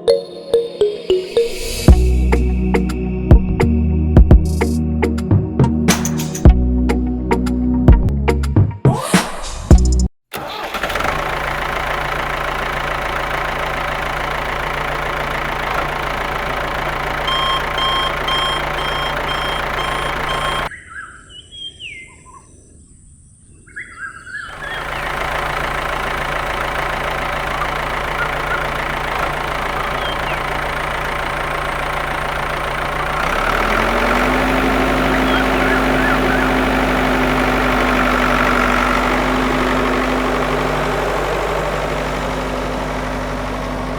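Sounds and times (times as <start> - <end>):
small tractor engine running: 10.3 - 20.7, 24.5 - 43.9
faint bird chirps: 17.2 - 25.2, 27.5 - 29.0, 29.6 - 30.7, 34.9 - 37.0
short beeps: 17.3 - 20.7.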